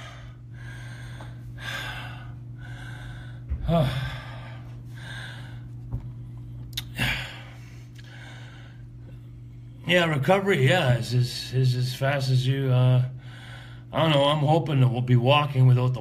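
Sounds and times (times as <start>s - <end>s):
man breathing heavily: 0.0s - 9.8s, 13.1s - 13.9s
steady low hum: 0.0s - 16.0s.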